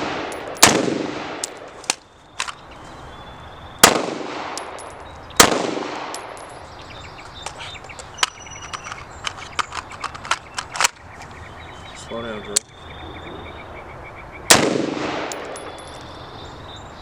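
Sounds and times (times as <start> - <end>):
echoing gunshots: 0.0 - 1.8, 3.8 - 6.6, 14.5 - 15.9.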